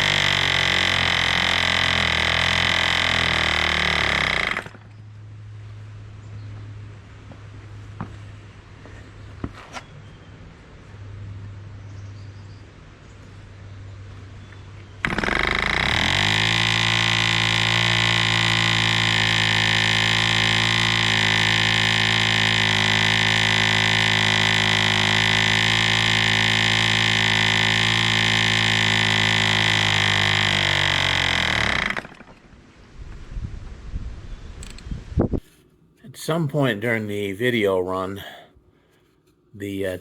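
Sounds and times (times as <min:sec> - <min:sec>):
model airplane engine buzzing: 0:00.0 - 0:05.1, 0:15.0 - 0:32.6.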